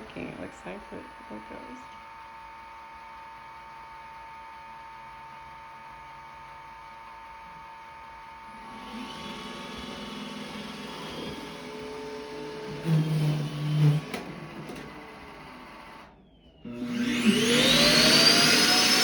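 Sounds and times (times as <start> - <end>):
steady hum: 0.0 - 2.8
robot vacuum motors whirring: 0.0 - 19.0.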